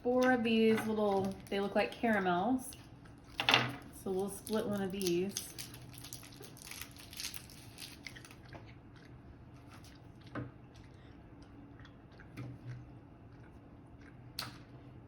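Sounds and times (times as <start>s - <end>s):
wrapper crinkling: 0.9s - 2.3s, 4.2s - 8.4s.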